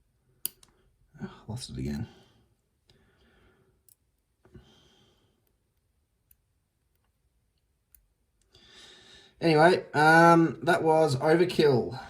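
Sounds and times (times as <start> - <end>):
lock pick clicks: 0.4 - 0.8.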